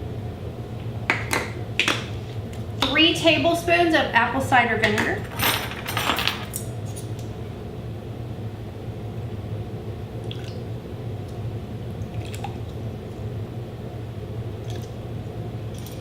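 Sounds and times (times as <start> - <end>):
low room hum: 0.0 - 16.0
small liquid sounds: 10.2 - 10.6, 12.0 - 12.8.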